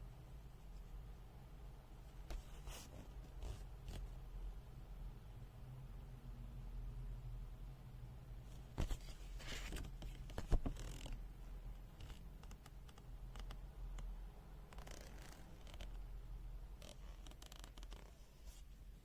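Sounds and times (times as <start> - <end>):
low steady hum: 0.0 - 19.0
paper pages rustling: 8.8 - 11.0.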